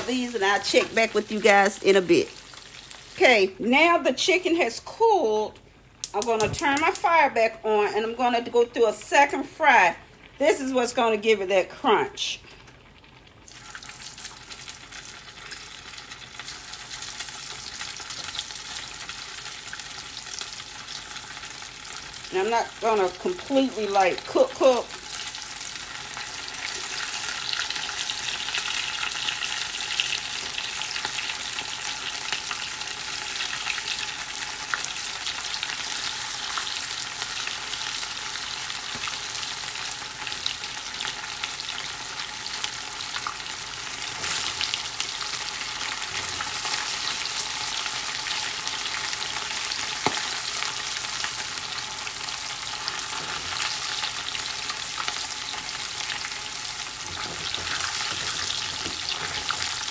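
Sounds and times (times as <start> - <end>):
chicken deep-frying in oil: 0.0 - 59.9.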